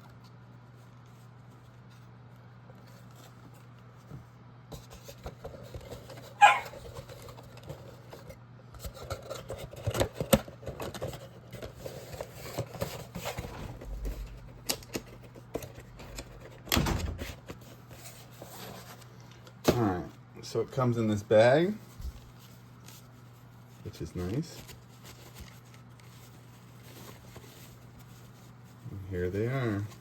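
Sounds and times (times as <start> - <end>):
packaging rustling and crinkling: 21.6 - 30.0.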